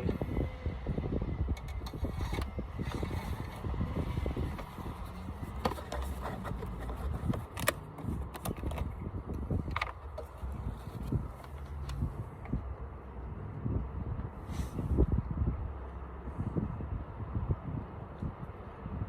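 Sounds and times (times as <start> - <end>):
steady low rumble: 0.0 - 19.0
clicks and scrapes: 1.6 - 12.1.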